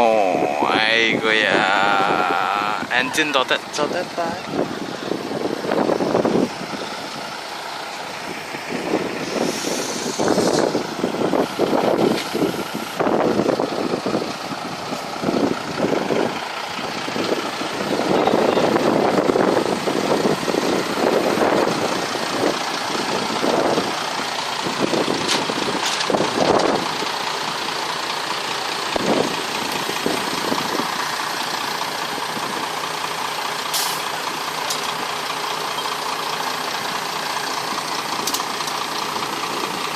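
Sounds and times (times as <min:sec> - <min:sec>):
boat engine running with clattering knocks: 0:22.3 - 0:30.8, 0:34.4 - 0:39.9.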